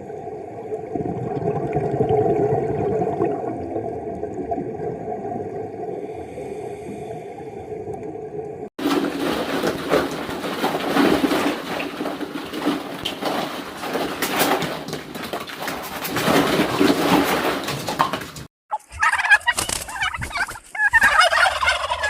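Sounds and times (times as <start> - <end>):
rustling: 8.8 - 18.5.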